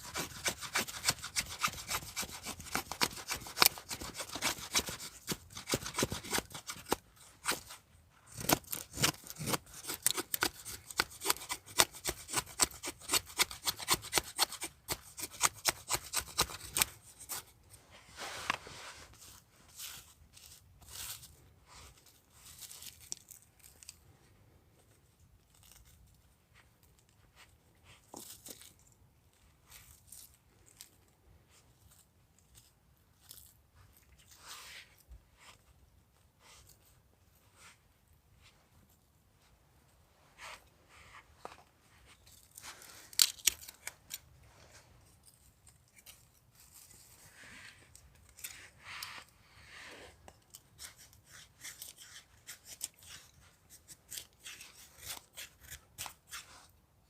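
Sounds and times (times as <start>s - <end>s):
blade shaving wood: 0.0s - 17.4s, 50.8s - 56.5s.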